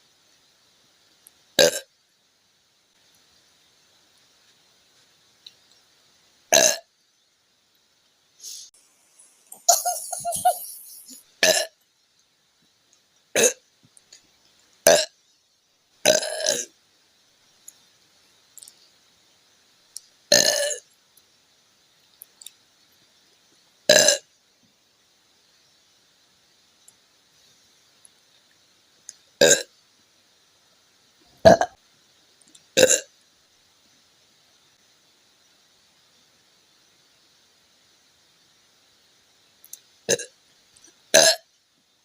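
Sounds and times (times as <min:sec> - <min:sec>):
woman burping: 0:06.6 - 0:06.8, 0:09.6 - 0:11.7, 0:13.4 - 0:13.6, 0:16.1 - 0:16.7, 0:20.3 - 0:20.8, 0:23.9 - 0:24.2, 0:31.5 - 0:31.8, 0:41.2 - 0:41.4.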